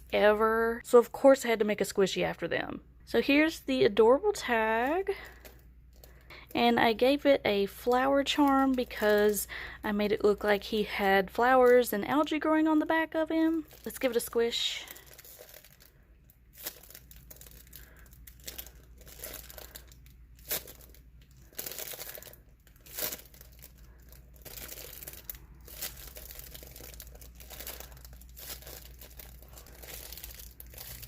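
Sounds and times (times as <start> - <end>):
squishy toy crinkling: 4.9 - 6.6, 7.9 - 10.7, 13.2 - 31.0.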